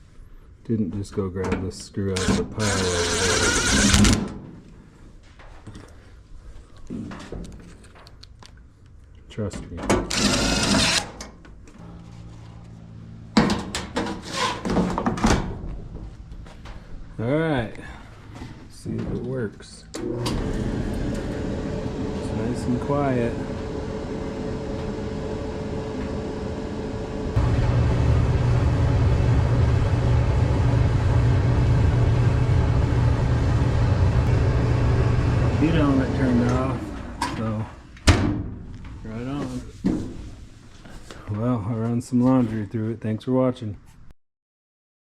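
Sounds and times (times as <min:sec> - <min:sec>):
clothes dryer humming: 0:02.1 - 0:04.5, 0:20.0 - 0:38.1.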